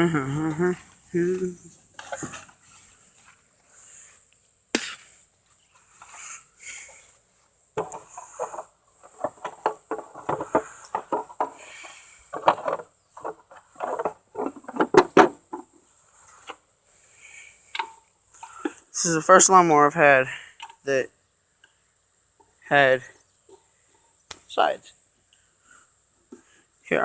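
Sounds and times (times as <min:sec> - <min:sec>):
clattering and knocking of parts: 0:02.0 - 0:03.4, 0:07.8 - 0:16.6, 0:17.7 - 0:18.9.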